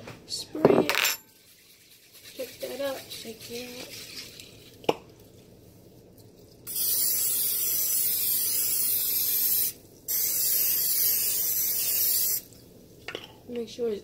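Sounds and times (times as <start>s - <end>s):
aerosol spray hissing: 6.7s - 12.5s.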